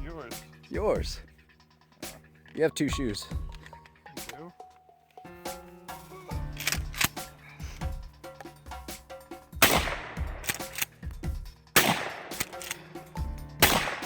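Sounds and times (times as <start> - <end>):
background music: 0.0 - 14.0
shotgun blasts with ringing tail: 9.6 - 10.7, 11.8 - 12.6, 13.6 - 14.0.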